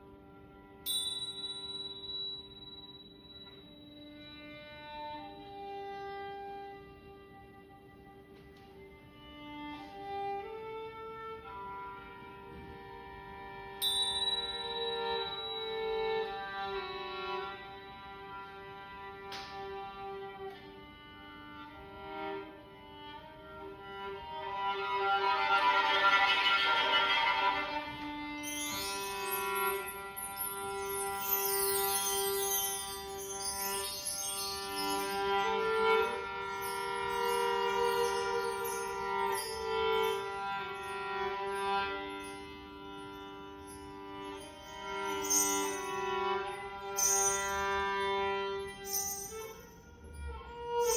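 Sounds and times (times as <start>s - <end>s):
violin long held notes: 0.0s - 50.9s
sustained ringing tones: 0.8s - 5.4s, 13.8s - 19.2s, 25.5s - 50.9s.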